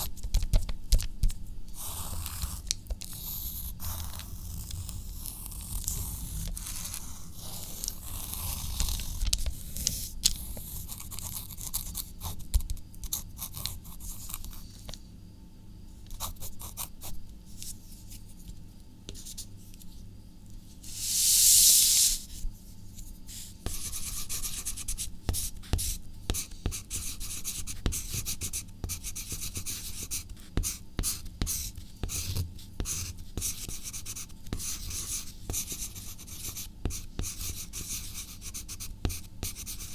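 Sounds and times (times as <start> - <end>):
pen scratching on paper: 23.3 - 39.9.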